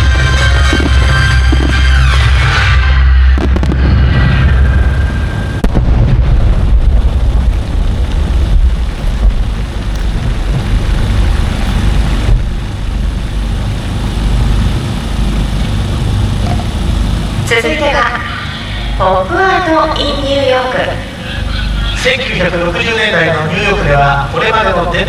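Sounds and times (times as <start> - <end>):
background music: 0.0 - 5.6
fireworks booming: 0.0 - 17.4
deep echoing rumble: 0.0 - 25.0.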